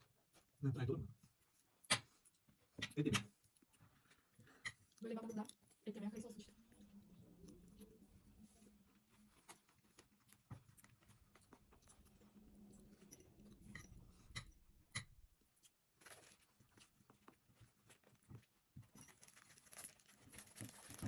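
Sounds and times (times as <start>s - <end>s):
chewing: 3.3s - 14.6s.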